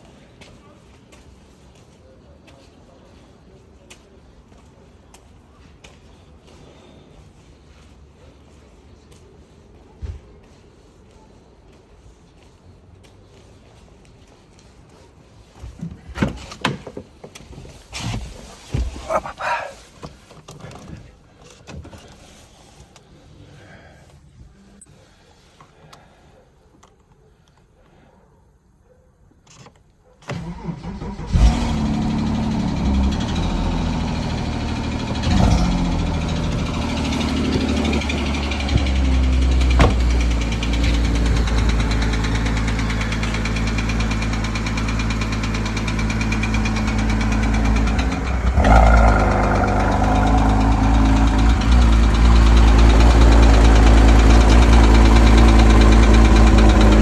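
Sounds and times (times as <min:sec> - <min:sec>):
car engine starting and idling: 0:30.3 - 0:57.0
engine ticking: 0:31.4 - 0:57.0.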